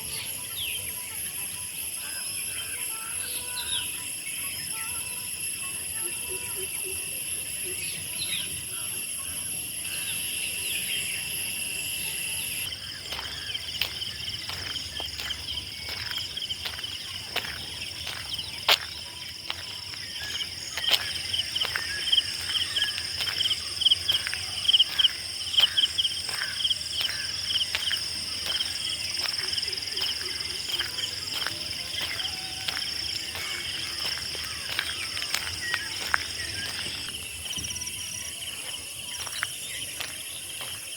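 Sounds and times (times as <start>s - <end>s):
insects droning: 0.0s - 40.9s.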